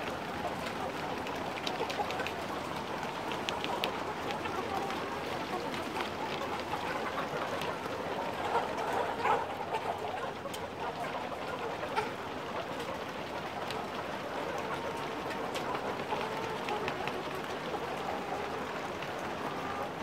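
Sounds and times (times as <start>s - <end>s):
chickens clucking: 0.0s - 20.0s
faint clicks: 0.5s - 7.7s.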